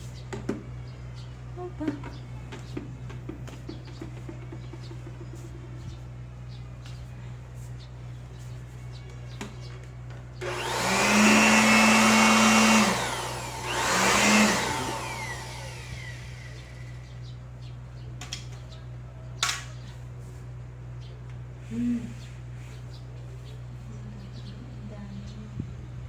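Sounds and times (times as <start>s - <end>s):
handheld vacuum cleaner running: 10.4s - 17.1s.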